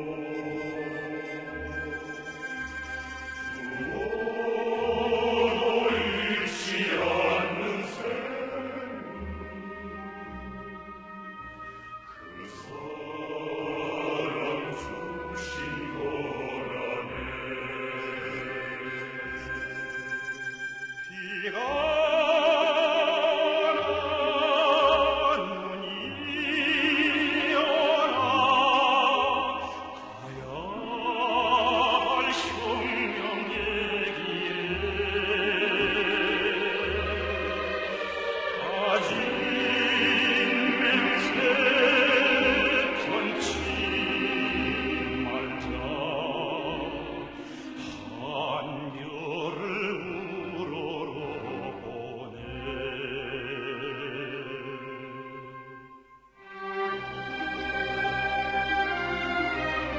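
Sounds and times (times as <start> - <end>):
instrumental accompaniment: 0.0 - 50.6, 54.8 - 59.9
operatic singing with vibrato: 0.0 - 59.9.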